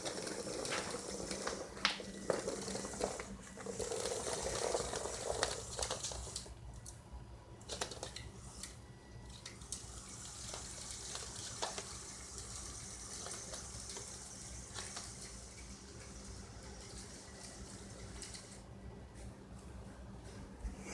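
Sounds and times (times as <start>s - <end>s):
toy robot motors hissing: 9.7s - 18.5s.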